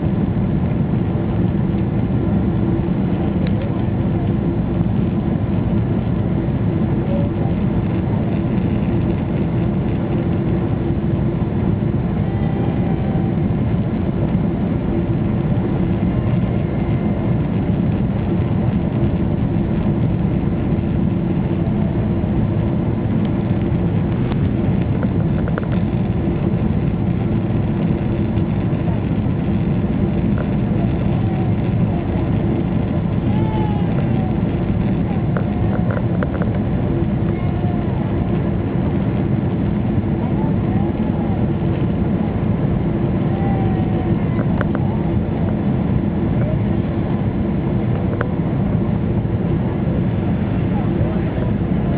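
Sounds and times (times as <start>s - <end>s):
airliner cabin engine rumble: 0.0s - 51.9s.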